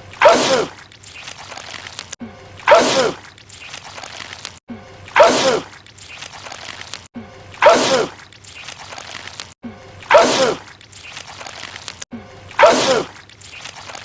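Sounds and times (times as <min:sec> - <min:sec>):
man sneezing loudly: 0:07.6 - 0:08.2, 0:12.6 - 0:13.1.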